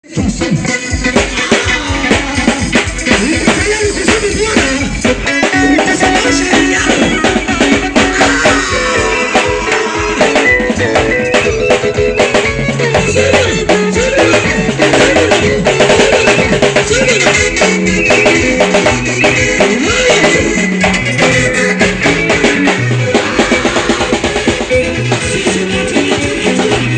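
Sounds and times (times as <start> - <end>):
live band playing worship music: 0.0 - 26.9
voices singing: 0.4 - 26.9.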